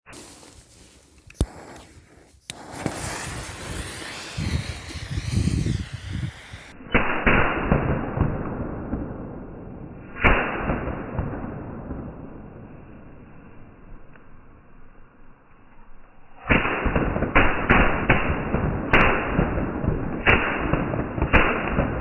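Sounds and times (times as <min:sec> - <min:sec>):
firework rapid pops: 0:00.2 - 0:07.9
firework sharp bangs: 0:01.4 - 0:07.9.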